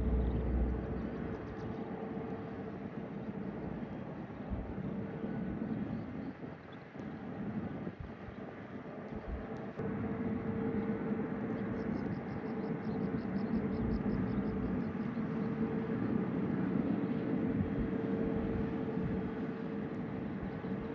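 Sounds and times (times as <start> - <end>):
engine hum: 0.0 - 5.7
distant jet engines droning: 0.0 - 20.9.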